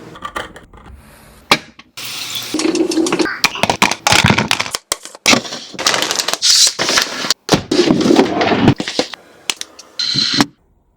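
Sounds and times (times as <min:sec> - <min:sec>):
containers and packaging handled: 0:02.6 - 0:09.2.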